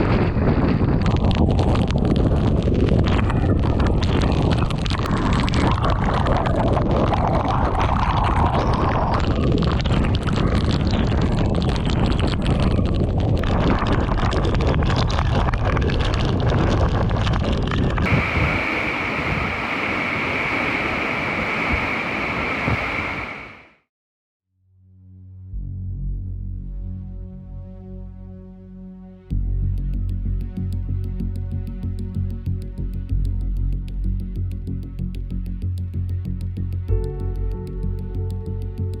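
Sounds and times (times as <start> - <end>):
gusting wind buffeting microphone: 0.0 - 23.8
steady high tone: 18.1 - 23.8
calm music: 36.2 - 39.0.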